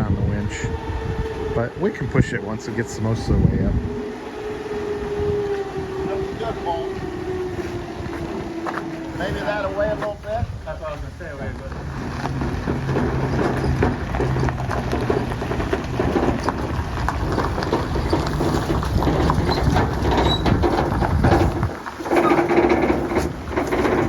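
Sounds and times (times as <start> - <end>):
steady rushing noise: 0.0 - 19.0
low engine hum: 0.0 - 24.0.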